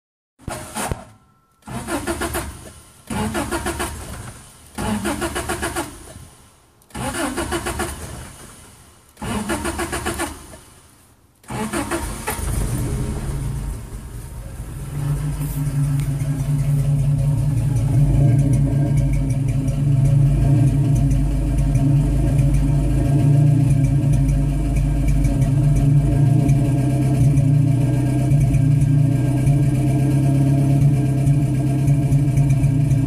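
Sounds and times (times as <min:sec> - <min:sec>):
engine cranking: 0:00.5 - 0:06.2, 0:06.9 - 0:10.7, 0:11.4 - 0:29.6
engine running with misfire: 0:11.4 - 0:33.0.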